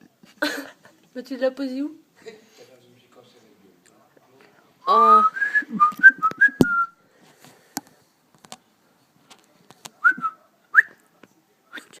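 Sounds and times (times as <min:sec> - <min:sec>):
person whistling: 0:04.9 - 0:07.0.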